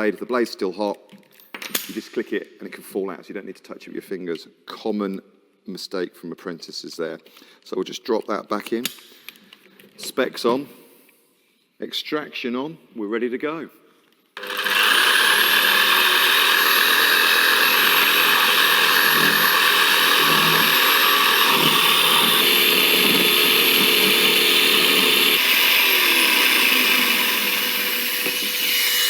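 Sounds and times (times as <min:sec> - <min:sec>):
jigsaw cutting: 0:14.4 - 0:29.0
vacuum running: 0:14.4 - 0:29.0.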